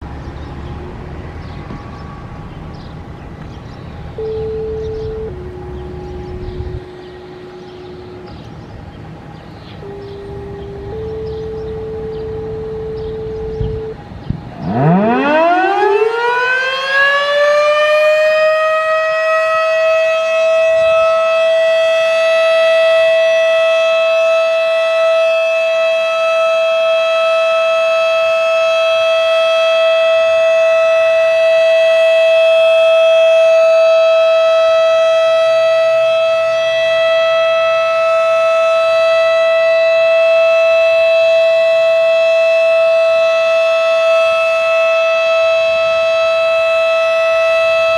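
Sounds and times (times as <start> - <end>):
siren winding up to steady tone: 4.2 - 8.6, 9.8 - 25.2.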